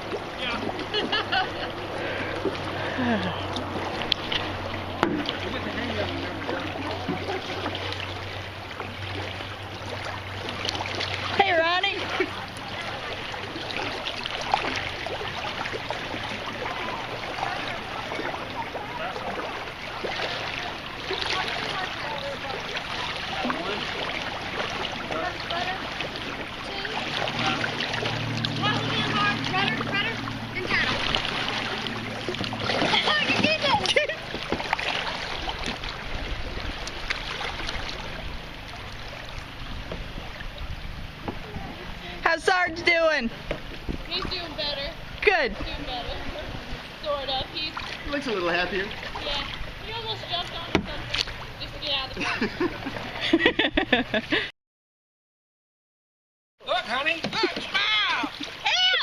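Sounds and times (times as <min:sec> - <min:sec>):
creek water trickling: 0:00.0 - 0:54.5, 0:56.6 - 0:59.0
sharp knock on canoe: 0:05.0 - 0:05.4, 0:50.7 - 0:51.3.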